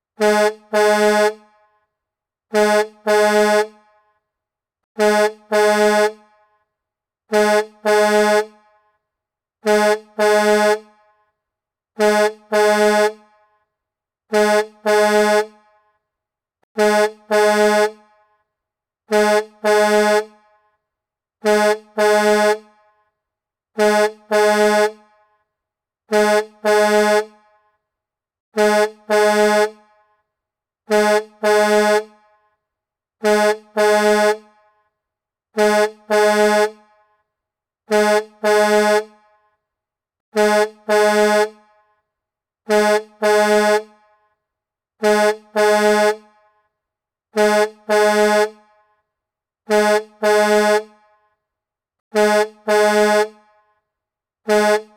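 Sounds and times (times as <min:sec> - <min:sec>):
truck horn double honk: 0:00.2 - 0:01.5, 0:02.5 - 0:04.0, 0:05.0 - 0:06.4, 0:07.3 - 0:08.7, 0:09.6 - 0:11.0, 0:12.0 - 0:13.4, 0:14.3 - 0:15.6, 0:16.8 - 0:18.2, 0:19.1 - 0:20.5, 0:21.4 - 0:22.9, 0:23.8 - 0:25.2, 0:26.1 - 0:27.6, 0:28.6 - 0:30.0, 0:30.9 - 0:32.3, 0:33.2 - 0:34.6, 0:35.6 - 0:36.9, 0:37.9 - 0:39.2, 0:40.3 - 0:41.7, 0:42.7 - 0:44.0, 0:45.0 - 0:46.4, 0:47.3 - 0:48.7, 0:49.7 - 0:51.0, 0:52.1 - 0:53.5, 0:54.4 - 0:54.9.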